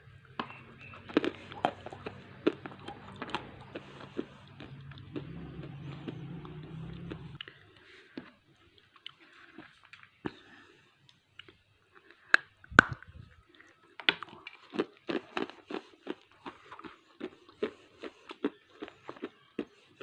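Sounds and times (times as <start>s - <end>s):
crunchy chewing: 0.0s - 20.0s
bite cracks: 12.3s - 13.2s.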